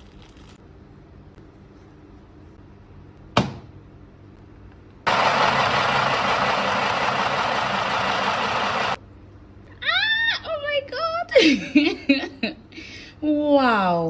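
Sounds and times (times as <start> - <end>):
sewing machine motor running: 5.1 - 9.0.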